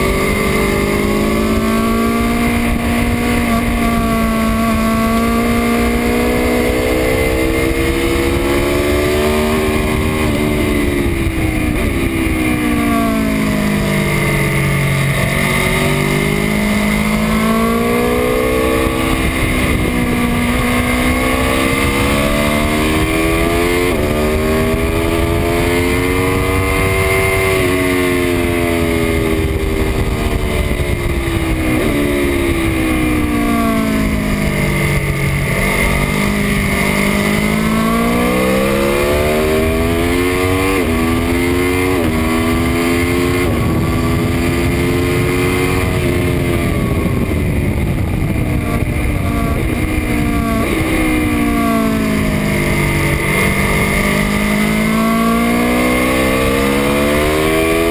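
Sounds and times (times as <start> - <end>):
motorcycle engine revving: 0.0 - 57.9
rushing wind noise: 0.0 - 57.9.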